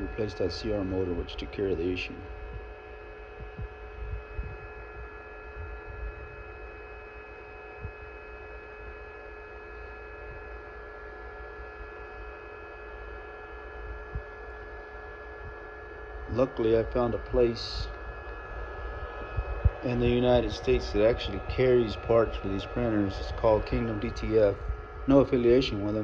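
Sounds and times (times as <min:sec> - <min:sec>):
faint steady tones: 0:00.0 - 0:26.0
steady electrical hum: 0:00.0 - 0:26.0
soft low thumps: 0:03.4 - 0:06.4, 0:18.2 - 0:21.6.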